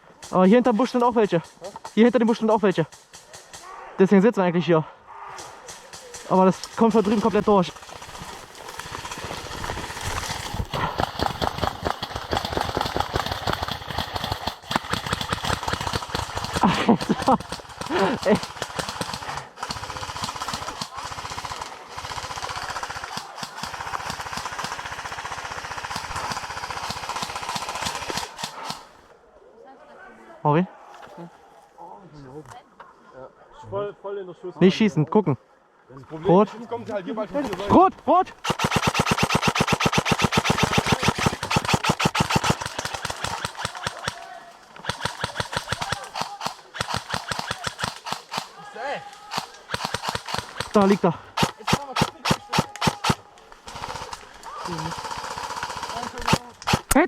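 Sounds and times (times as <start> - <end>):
airsoft gun firing full auto: 5.8 - 28.9, 38.4 - 48.6, 49.2 - 57.0.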